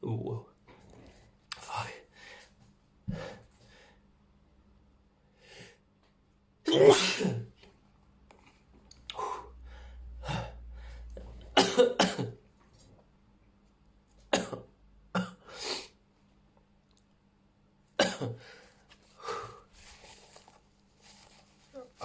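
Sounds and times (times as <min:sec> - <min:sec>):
breaths: 0:02.1 - 0:04.1, 0:05.3 - 0:05.8, 0:09.1 - 0:11.3, 0:18.4 - 0:20.2
person sneezing: 0:06.7 - 0:07.5.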